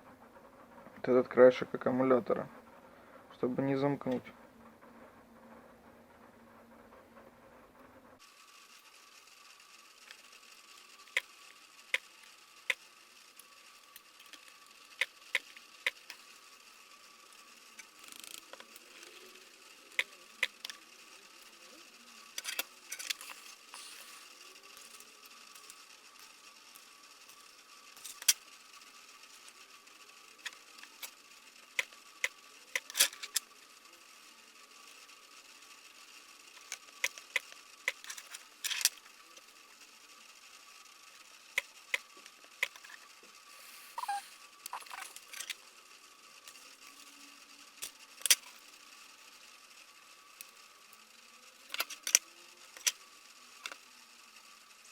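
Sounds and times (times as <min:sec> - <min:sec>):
faint high hum: 0:42.0 - 0:47.8.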